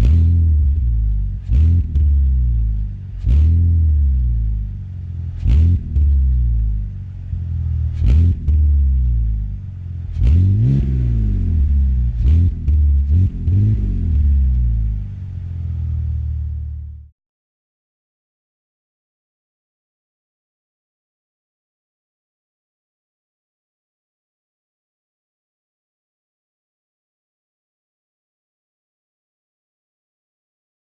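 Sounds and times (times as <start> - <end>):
car engine revving: 0.0 - 17.1.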